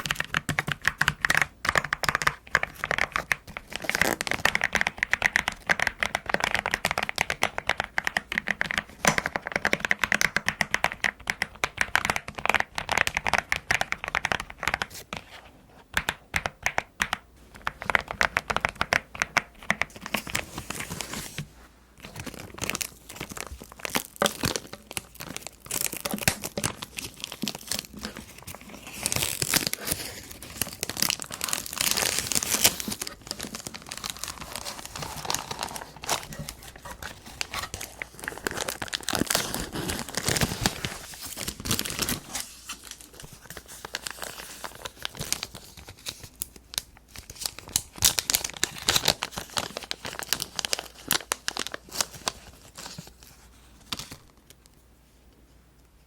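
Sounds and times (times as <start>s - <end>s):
packaging crinkling and tearing: 2.2s - 5.7s, 22.0s - 54.7s.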